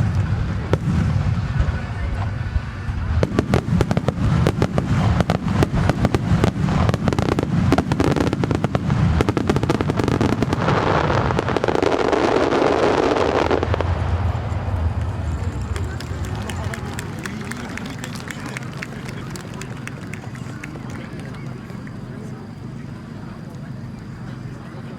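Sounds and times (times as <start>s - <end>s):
low booming: 0.0s - 17.4s
fireworks bursts and cracks: 0.0s - 24.4s
fireworks crackling rush: 0.0s - 24.9s.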